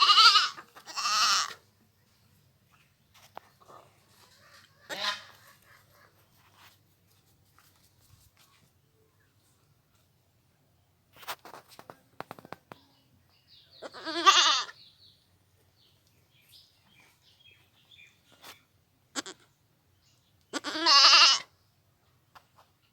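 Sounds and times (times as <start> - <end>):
goat bleating: 0.0 - 1.6, 4.4 - 5.7, 13.8 - 14.8, 19.1 - 19.5, 20.5 - 21.5.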